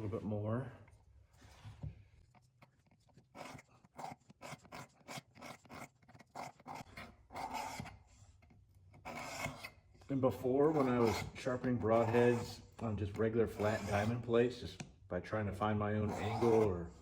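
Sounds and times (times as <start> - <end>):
blade scraping on sharpening file: 3.2 - 8.1, 9.0 - 9.9, 10.6 - 12.8, 13.4 - 14.2, 16.0 - 17.0.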